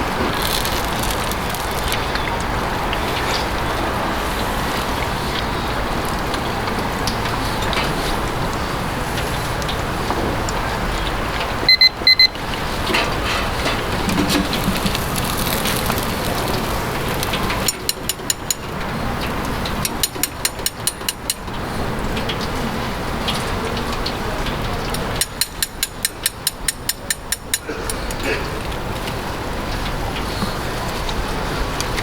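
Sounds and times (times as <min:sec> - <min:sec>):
skewers sizzling on a grill: 0:00.0 - 0:27.4
short beeps: 0:11.7 - 0:12.4.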